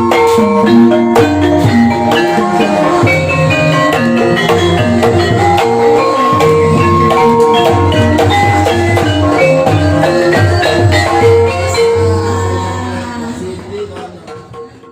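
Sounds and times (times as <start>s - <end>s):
gamelan ensemble music: 0.0s - 13.4s
mallet-struck keyed instruments: 0.9s - 12.4s
steady drum pattern: 1.6s - 11.4s.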